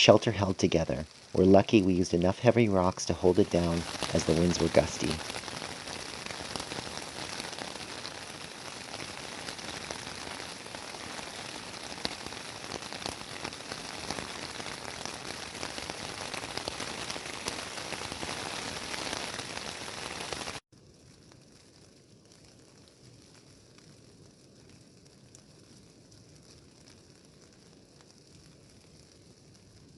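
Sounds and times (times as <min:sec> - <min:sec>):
rain falling: 0:00.0 - 0:20.6
raindrops ticking close by: 0:00.0 - 0:29.9.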